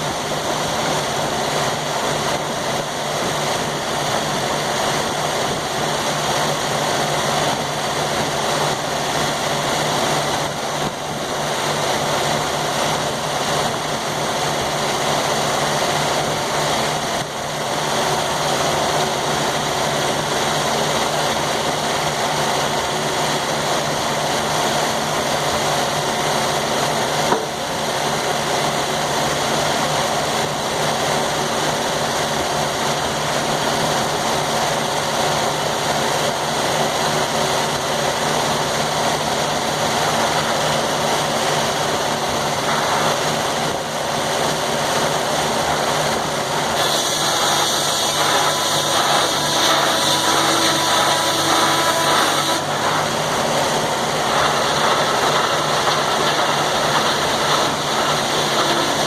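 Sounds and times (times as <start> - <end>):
high-pitched whine and hiss: 0.0 - 59.0
sawmill engine running: 0.0 - 59.0.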